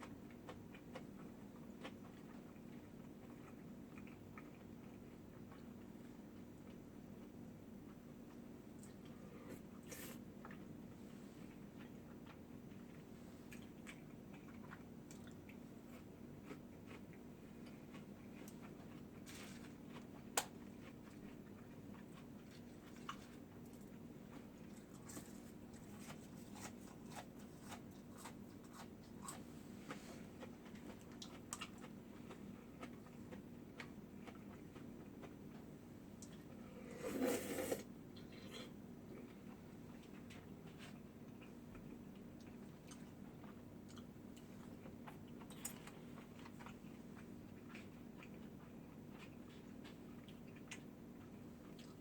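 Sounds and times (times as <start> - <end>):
chewing and crunching food: 0.0 - 52.0
wet mouth sounds: 37.0 - 38.7.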